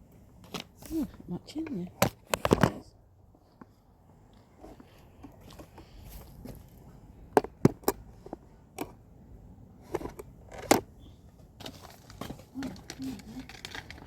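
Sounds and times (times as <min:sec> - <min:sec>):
handling clicks and knocks: 0:04.6 - 0:09.0, 0:09.8 - 0:14.0.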